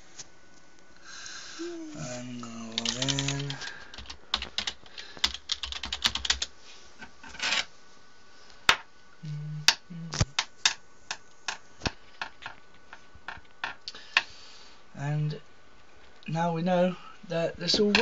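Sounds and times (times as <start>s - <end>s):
computer keyboard typing: 2.6s - 6.5s.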